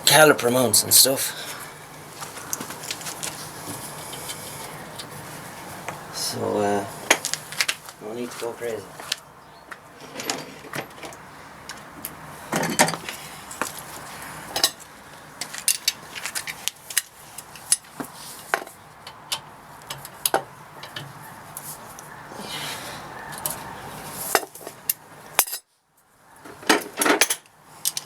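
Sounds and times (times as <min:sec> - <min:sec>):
hand tools clinking on metal: 0:14.6 - 0:14.8, 0:15.4 - 0:17.9, 0:24.3 - 0:25.7.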